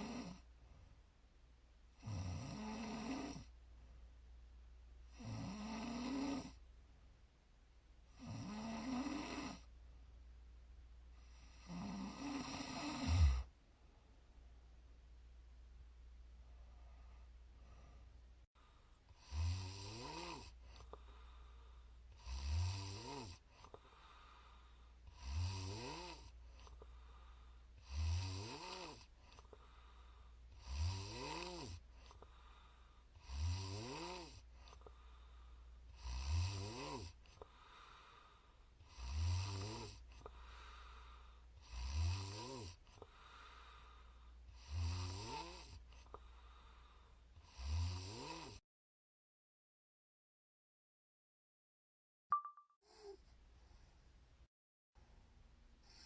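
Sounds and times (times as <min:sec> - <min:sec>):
woman snoring: 0:00.0 - 0:00.5, 0:02.0 - 0:03.5, 0:05.1 - 0:06.6, 0:08.1 - 0:09.7, 0:11.2 - 0:13.5, 0:19.1 - 0:21.3, 0:22.1 - 0:26.8, 0:27.8 - 0:35.0, 0:35.9 - 0:48.6, 0:52.9 - 0:53.2.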